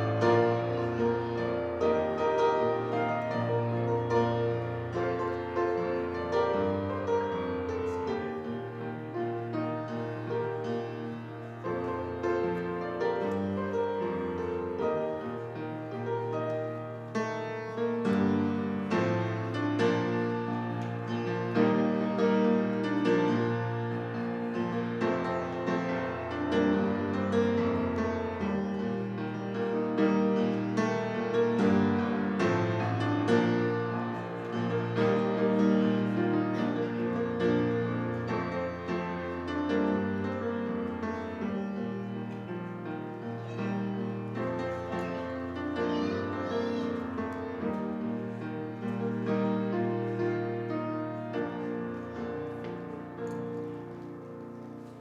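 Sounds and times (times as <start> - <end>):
slow solo piano: 0.0 - 55.0.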